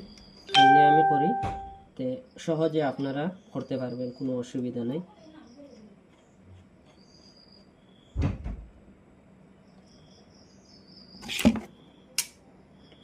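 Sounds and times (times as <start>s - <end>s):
crickets chirping: 0.0s - 0.5s, 1.6s - 6.3s, 6.9s - 8.2s, 9.3s - 13.0s.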